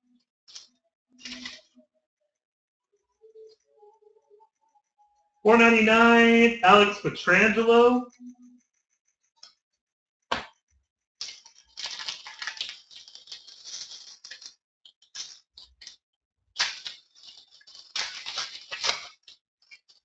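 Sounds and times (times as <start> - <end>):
trading cards rustling: 0.5 - 1.6, 11.2 - 14.5, 16.6 - 19.2.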